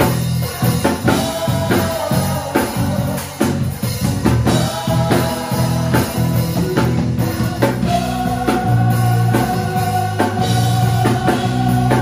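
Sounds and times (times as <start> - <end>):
drum kit steady beat: 0.0 - 12.0.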